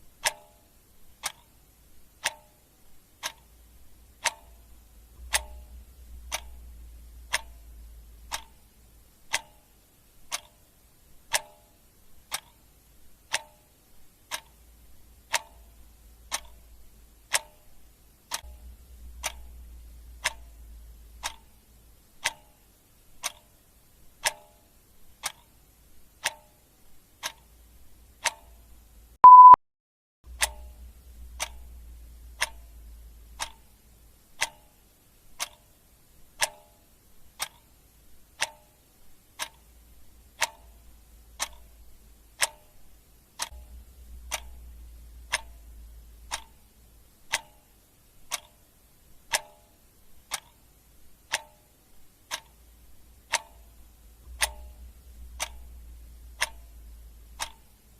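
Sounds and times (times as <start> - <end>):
clock ticking: 0.0 - 29.6, 30.3 - 57.9
short high beep: 29.2 - 29.6.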